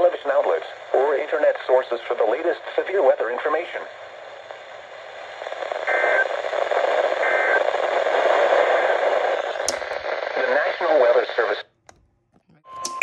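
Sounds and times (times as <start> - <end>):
radio static hiss: 0.0 - 11.7
two-tone data chirps: 12.6 - 13.0.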